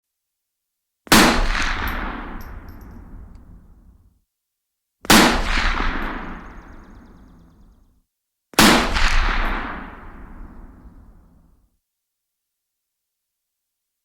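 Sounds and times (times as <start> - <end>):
rifle shots echoing: 1.1 - 3.4, 5.1 - 7.1.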